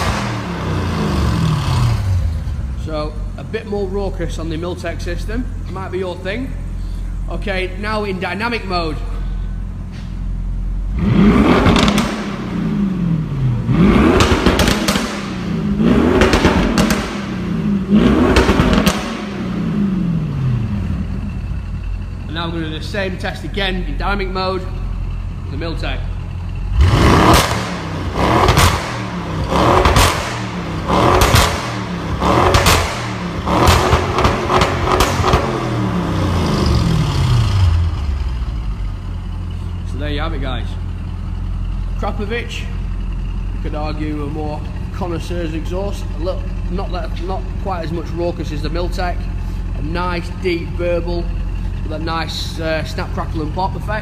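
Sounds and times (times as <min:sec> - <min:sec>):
car engine revving: 0:00.0 - 0:54.0
exhaust crackles and pops: 0:11.4 - 0:12.5, 0:13.7 - 0:19.4, 0:26.7 - 0:37.2.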